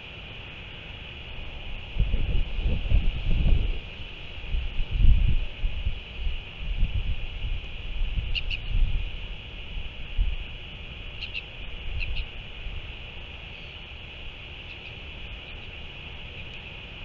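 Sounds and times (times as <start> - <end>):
steady high hiss: 0.0 - 17.0
wind gusting on microphone: 1.2 - 13.3
bird chirping: 8.3 - 8.8, 11.2 - 12.4, 14.6 - 16.6.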